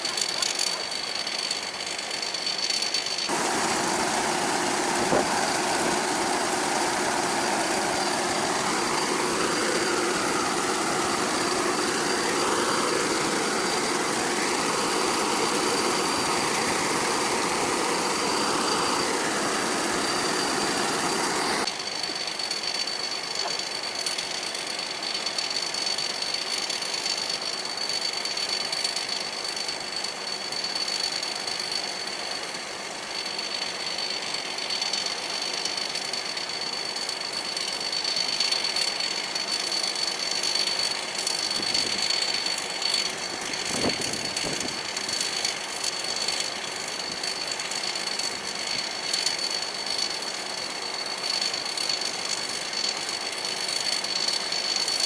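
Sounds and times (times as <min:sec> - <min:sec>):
combine harvester running: 0:03.3 - 0:21.7
high-pitched whine: 0:03.3 - 0:21.7.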